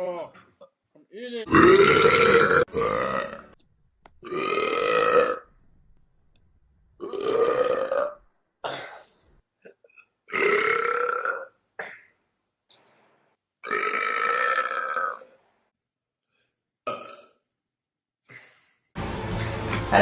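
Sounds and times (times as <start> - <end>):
young man burping: 1.4 - 3.4, 4.2 - 5.5, 7.0 - 12.2, 13.6 - 15.2, 16.8 - 17.4.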